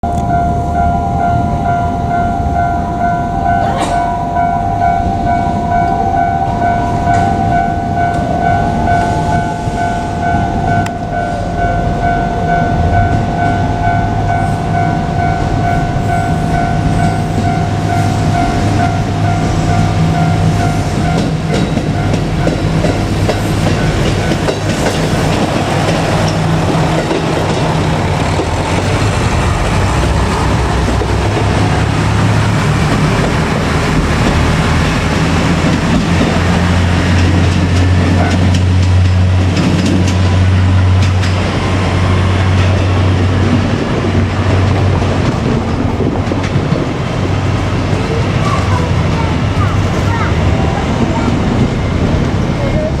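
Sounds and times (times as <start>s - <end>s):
diesel engine drone: 0.0s - 53.0s
train wheels clacking on rail joints: 15.2s - 53.0s.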